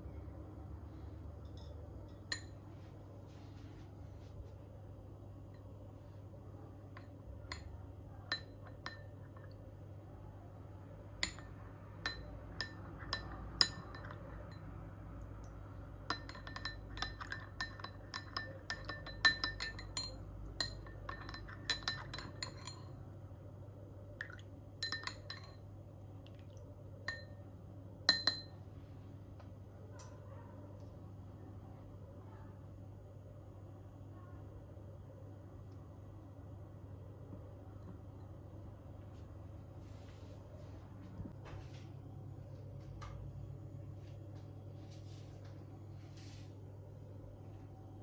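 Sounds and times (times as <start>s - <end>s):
steady low hum: 0.0s - 48.0s
metal spoon clinking on glass: 1.4s - 2.6s, 7.0s - 9.6s, 11.2s - 14.8s, 16.0s - 23.0s, 24.8s - 25.6s, 27.1s - 27.4s, 28.1s - 28.6s.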